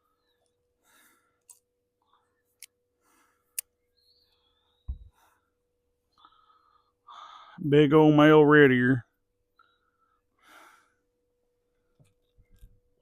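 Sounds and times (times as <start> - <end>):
faint breaths: 0.0 - 7.6, 9.4 - 12.6
faint steady hum: 0.0 - 13.0
soft low thump: 4.9 - 5.2.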